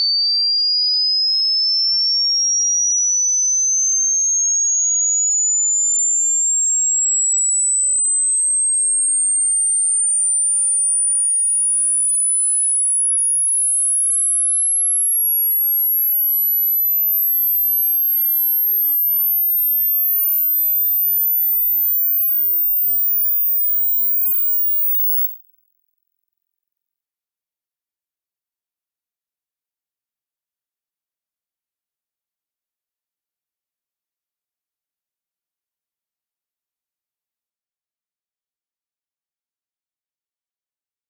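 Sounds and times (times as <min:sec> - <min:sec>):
sine tone gliding upward: 0:03.3 - 0:07.2, 0:07.8 - 0:25.4.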